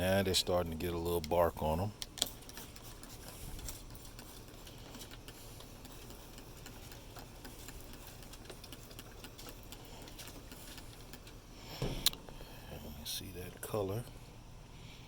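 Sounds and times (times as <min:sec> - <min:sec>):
charcoal grill ticking and crackling: 0:00.0 - 0:11.4
low steady hiss: 0:11.6 - 0:15.0.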